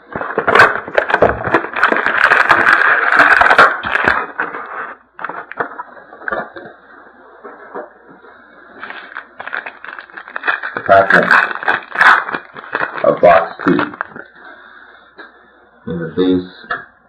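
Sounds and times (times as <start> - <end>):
wrapper and cardboard tearing: 0.0 - 5.8, 8.7 - 14.2
clicks and rustles of handling: 0.1 - 6.8.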